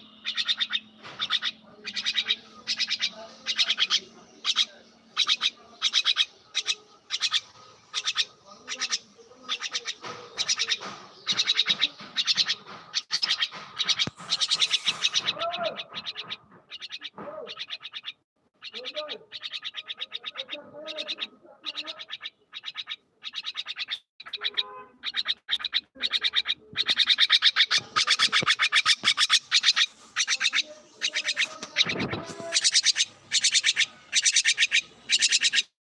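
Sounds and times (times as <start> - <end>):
bird chattering: 0.0 - 35.8.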